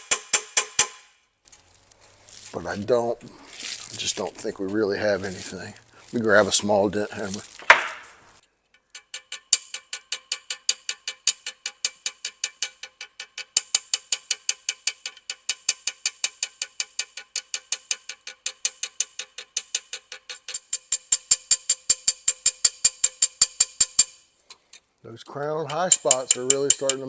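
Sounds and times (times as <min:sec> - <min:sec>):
hammer tapping on metal tube: 0:00.0 - 0:01.0, 0:09.0 - 0:24.2, 0:25.7 - 0:27.0.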